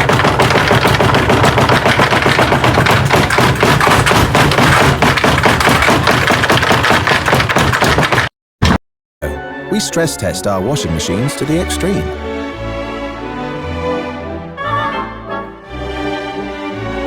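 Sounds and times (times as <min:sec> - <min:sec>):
rapid banging and clattering: 0:00.0 - 0:08.8.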